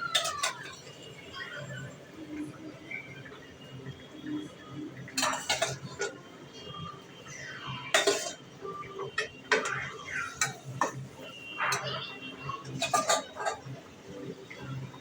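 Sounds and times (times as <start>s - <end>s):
metal utensil scraping a pan: 5.2s - 6.2s, 8.0s - 8.4s, 12.6s - 13.7s.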